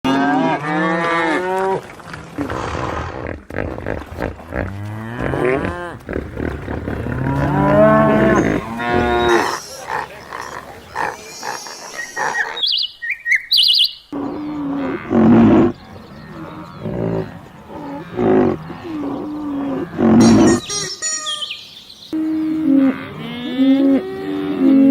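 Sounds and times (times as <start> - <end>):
cows mooing: 3.9 - 12.6, 14.1 - 21.5, 22.2 - 24.9.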